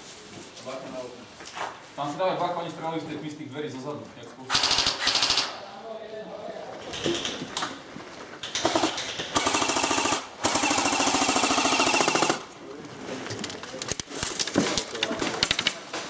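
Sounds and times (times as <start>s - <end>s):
airsoft guns firing bursts: 4.5s - 5.6s, 8.4s - 12.5s.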